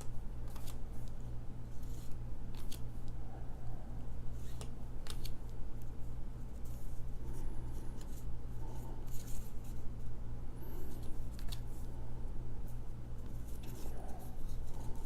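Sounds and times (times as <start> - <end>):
cards swishing and snapping: 0.0 - 3.2, 4.3 - 5.9, 11.0 - 11.8
steady low hum: 0.0 - 15.0.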